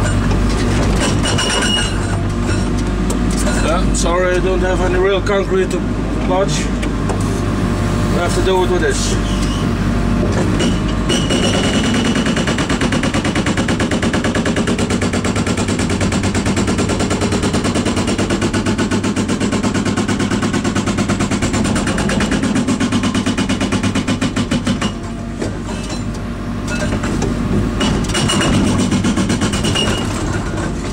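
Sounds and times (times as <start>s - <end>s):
hydraulic jackhammer hammering: 0.0s - 2.8s, 10.2s - 26.1s, 26.7s - 30.9s.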